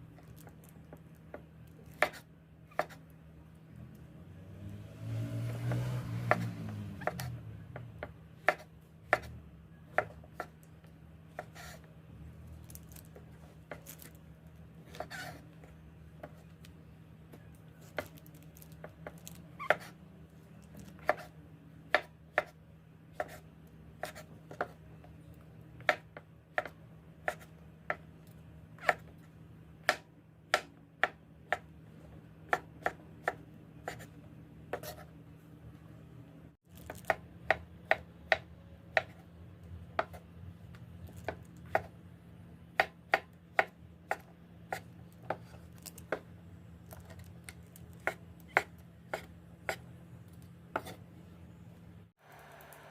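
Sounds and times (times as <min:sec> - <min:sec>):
knife chopping on cutting board: 0:01.9 - 0:03.0, 0:05.5 - 0:07.4, 0:08.0 - 0:09.3, 0:09.9 - 0:10.5, 0:21.9 - 0:22.6, 0:40.0 - 0:40.2, 0:41.2 - 0:41.9, 0:42.8 - 0:46.2, 0:48.0 - 0:49.9, 0:50.7 - 0:51.0.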